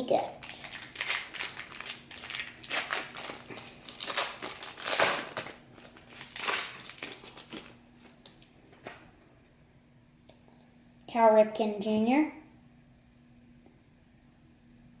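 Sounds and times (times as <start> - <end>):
crinkly wrapper torn and crumpled: 0.4 - 8.5.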